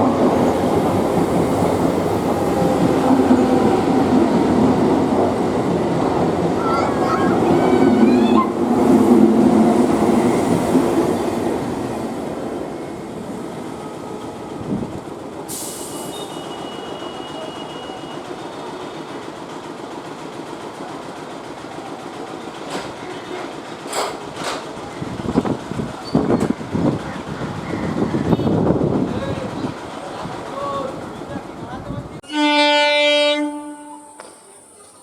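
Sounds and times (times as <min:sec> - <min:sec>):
train running on track: 0:00.0 - 0:35.0
high wheel squeal: 0:15.5 - 0:19.0.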